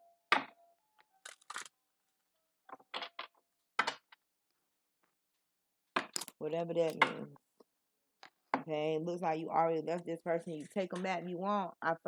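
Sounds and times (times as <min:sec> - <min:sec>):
cards clicking and tapping: 0:06.0 - 0:07.1.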